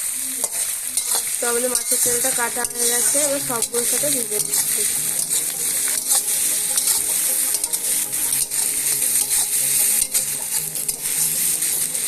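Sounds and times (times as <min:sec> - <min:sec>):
food sizzling in hot oil: 0:00.0 - 0:12.0.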